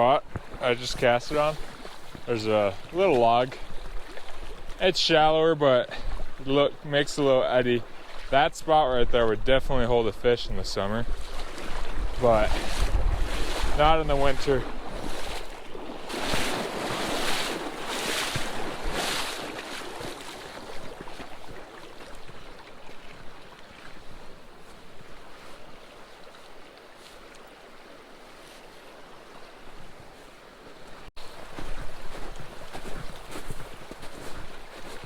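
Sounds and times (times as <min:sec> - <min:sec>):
creek water running: 0:00.0 - 0:35.0
wind on microphone: 0:08.9 - 0:19.2.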